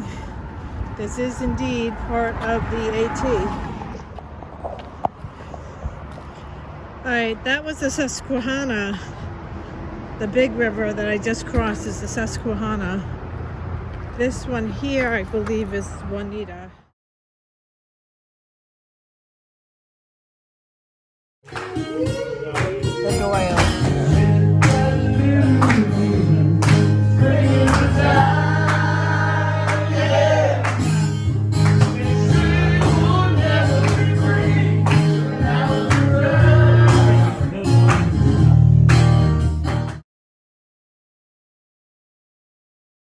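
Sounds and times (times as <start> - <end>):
song with singing and guitar: 21.6 - 39.2.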